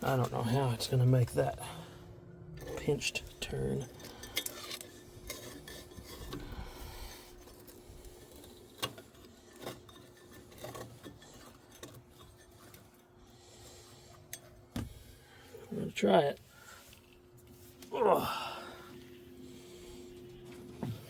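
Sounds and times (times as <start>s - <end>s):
faint steady hum: 0.0s - 21.0s
cable rubbing and scraping: 2.6s - 13.2s.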